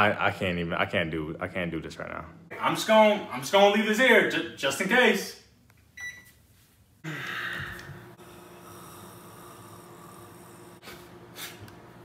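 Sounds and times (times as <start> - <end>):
microwave oven humming: 7.0 - 12.0.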